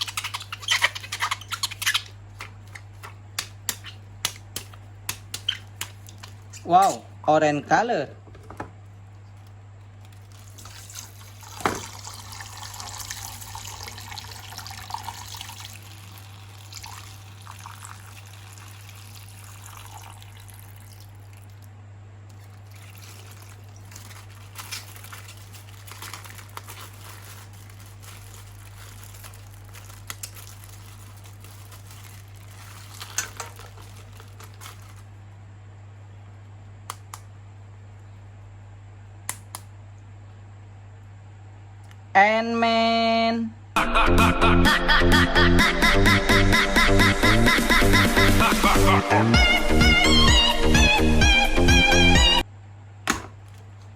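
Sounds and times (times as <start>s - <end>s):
low electrical hum: 0.0s - 45.7s, 46.8s - 53.9s
liquid pouring: 10.2s - 21.7s, 22.4s - 24.7s.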